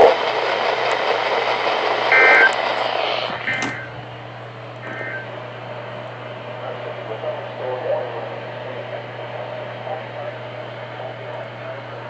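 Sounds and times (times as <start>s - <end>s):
radio hiss: 0.0s - 4.0s, 4.8s - 5.4s, 6.6s - 11.9s
low hum: 0.0s - 6.8s
electronic data bursts: 2.1s - 4.0s, 4.8s - 5.3s.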